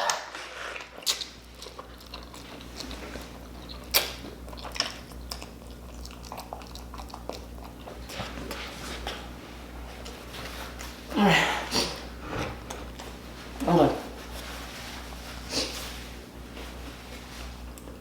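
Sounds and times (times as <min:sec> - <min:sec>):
wet chewing and smacking: 0:00.0 - 0:09.4.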